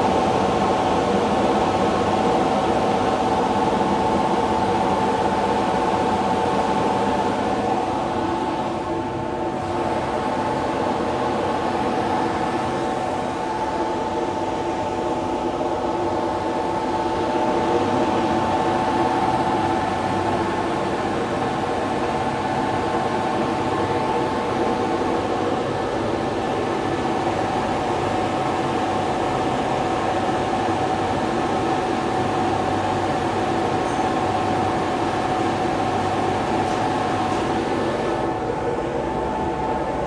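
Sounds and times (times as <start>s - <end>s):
crusher machine humming with a whine: 0.0s - 40.0s.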